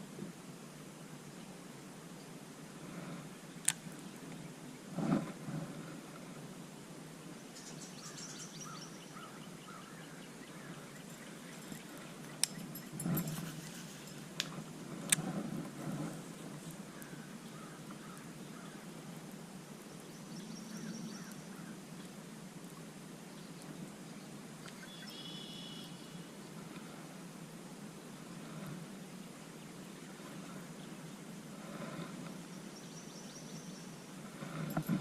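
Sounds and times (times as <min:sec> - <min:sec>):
faint outdoor ambience: 0:00.0 - 0:35.0
birds chirping: 0:07.4 - 0:14.3, 0:16.3 - 0:22.2, 0:23.3 - 0:26.6.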